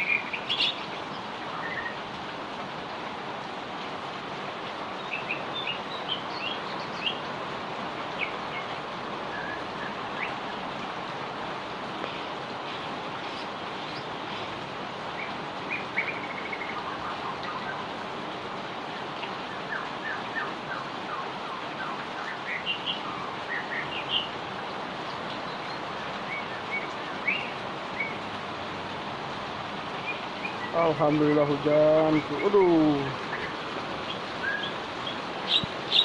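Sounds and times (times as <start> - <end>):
small birds chirping: 0.0 - 2.1, 4.9 - 7.3, 12.0 - 18.0, 18.8 - 28.3, 29.8 - 36.0
heavy rain falling: 0.0 - 36.0.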